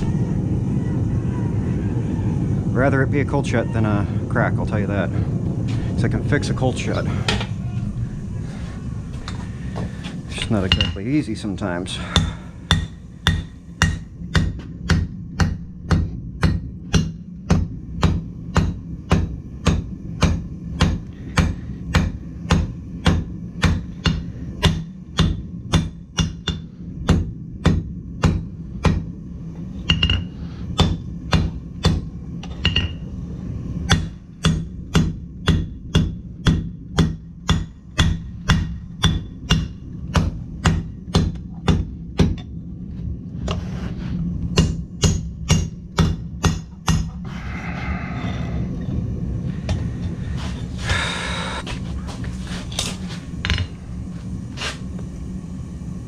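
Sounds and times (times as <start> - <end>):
steady low hum: 0.0 - 56.0
hammer striking steel on anvil: 10.3 - 11.1, 12.1 - 29.1, 29.9 - 33.0, 33.9 - 42.5, 44.5 - 47.2.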